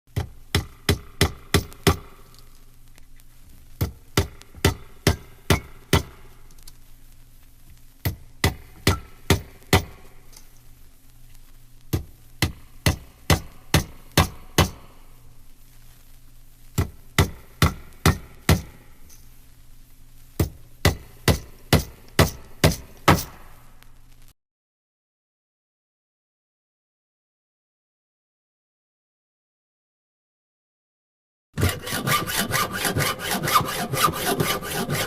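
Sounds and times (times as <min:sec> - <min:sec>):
low steady hum: 0:00.1 - 0:24.3.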